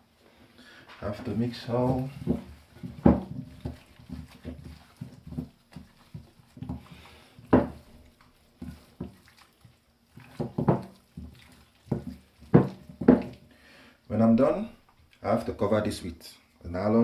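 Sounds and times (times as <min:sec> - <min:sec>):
hands squelching raw chicken: 0:01.3 - 0:13.5.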